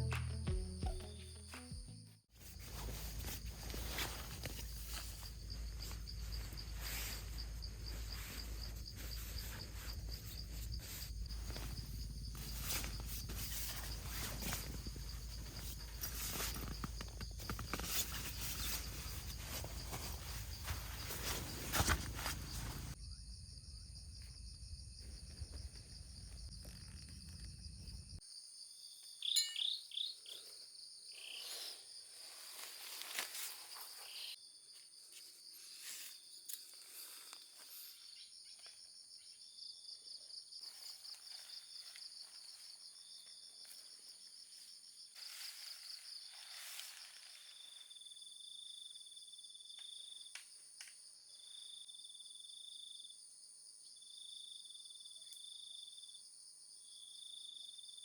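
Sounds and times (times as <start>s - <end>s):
insects trilling: 2.6s - 24.3s, 25.0s - 53.2s
bird chirps: 29.0s - 31.8s
repeating high chirp: 29.2s - 30.2s.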